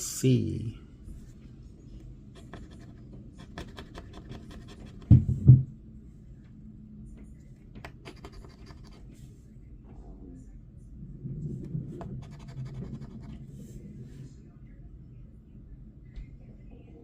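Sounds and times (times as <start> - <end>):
scratching lottery ticket: 2.4 - 5.1, 7.8 - 9.2, 12.0 - 13.4.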